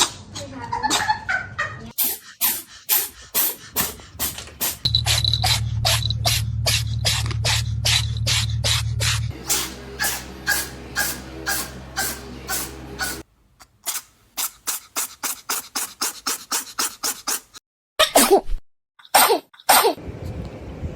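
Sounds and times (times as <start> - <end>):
cat sneezing: 1.9 - 4.8, 13.9 - 18.5, 19.1 - 20.0.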